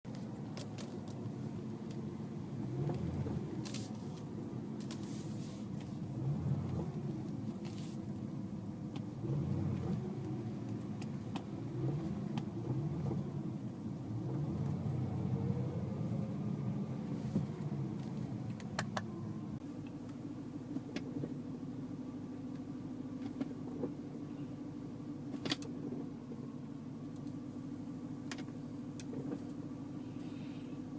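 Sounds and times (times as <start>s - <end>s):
car engine idling: 0.1s - 30.9s
car engine revving: 2.0s - 19.6s.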